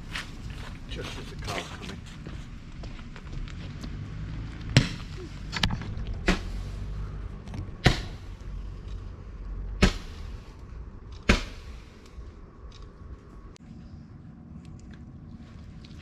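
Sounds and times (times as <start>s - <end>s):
low rumble: 0.0s - 16.0s
firework whoosh: 9.8s - 10.6s, 11.3s - 12.2s.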